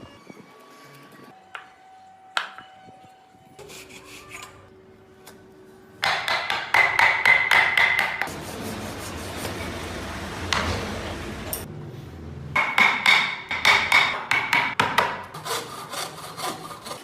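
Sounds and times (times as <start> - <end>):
rasping strokes on wood: 15.4 - 17.0.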